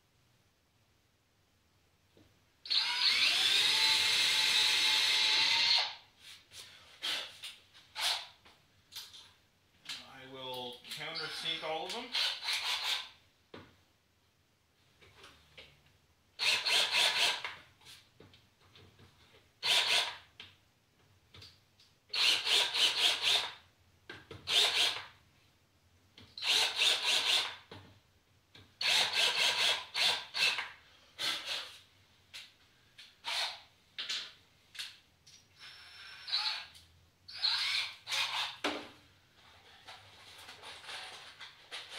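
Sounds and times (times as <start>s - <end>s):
power drill cutting into wood: 2.7s - 6.0s, 12.1s - 13.1s, 16.4s - 17.5s, 19.6s - 20.2s, 22.1s - 23.6s, 24.5s - 25.1s, 26.4s - 27.6s, 28.8s - 31.7s, 33.2s - 33.6s, 35.6s - 36.7s, 37.3s - 38.6s.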